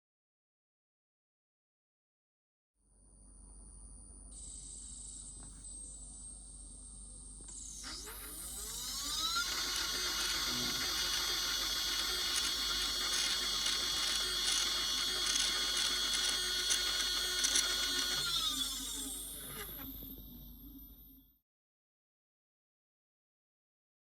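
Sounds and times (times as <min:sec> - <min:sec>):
motor whine of telescope mount: 0:07.4 - 0:21.3.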